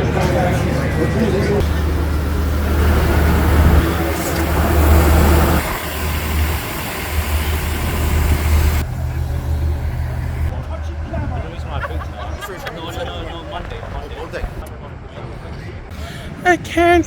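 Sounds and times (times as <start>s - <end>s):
diesel railcar engines humming: 0.0s - 14.6s
hiss: 1.6s - 10.5s.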